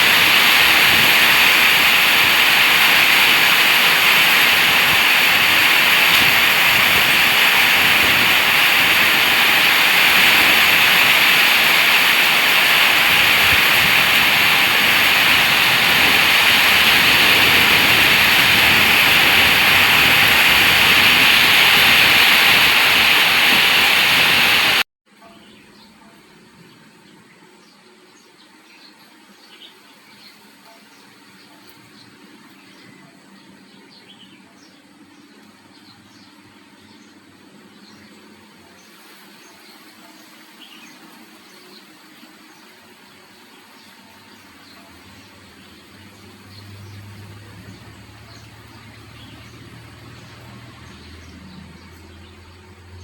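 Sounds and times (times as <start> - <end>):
heavy rain: 0.0 - 24.9, 41.4 - 52.3.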